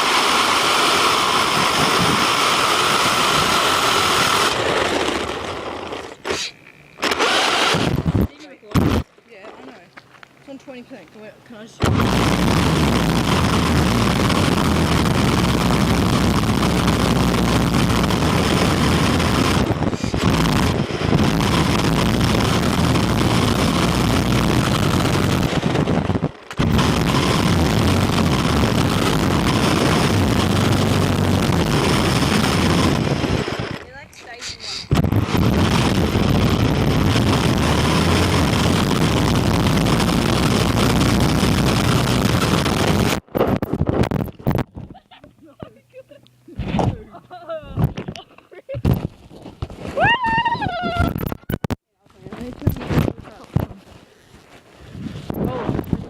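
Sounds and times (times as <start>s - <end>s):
toy car motor and tyres: 0.0s - 44.5s.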